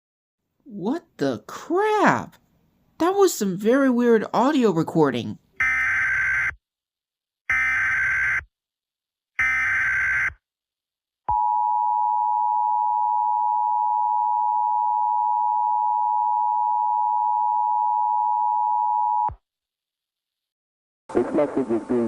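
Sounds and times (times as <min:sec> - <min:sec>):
two-tone alarm: 0:05.6 - 0:06.6, 0:07.5 - 0:08.4, 0:09.4 - 0:10.4.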